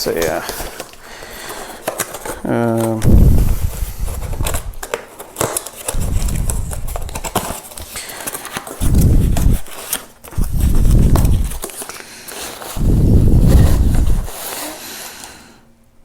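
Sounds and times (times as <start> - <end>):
packaging rustling and clicks: 0.0 - 15.6
dull low thumps: 3.0 - 4.8, 6.0 - 7.3, 8.8 - 9.7, 10.4 - 11.6, 12.8 - 14.3.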